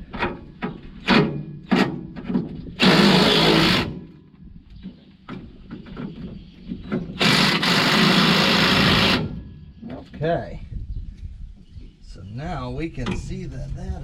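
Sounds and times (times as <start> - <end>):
impact wrench running: 7.2 - 9.4.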